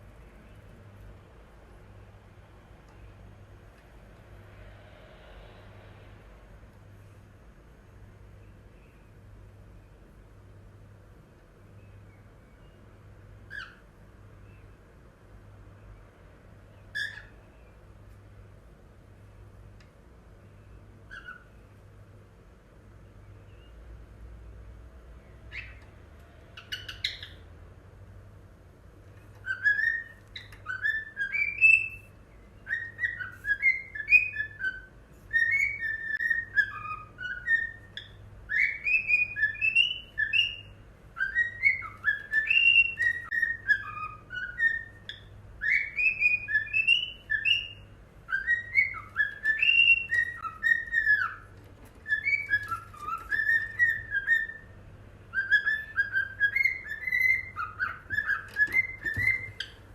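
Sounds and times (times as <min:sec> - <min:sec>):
cockatiel whistling: 0:16.9 - 0:17.3, 0:21.1 - 0:21.5, 0:25.5 - 0:25.8, 0:26.6 - 0:27.4, 0:29.4 - 0:59.8.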